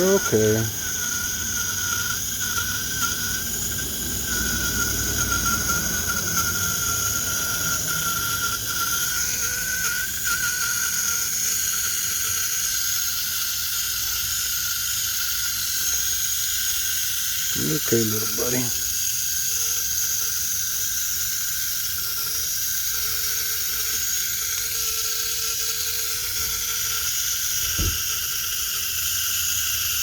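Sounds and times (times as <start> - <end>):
faint high whine: 0.0 - 12.6, 17.4 - 18.9
tap water running: 27.5 - 28.1.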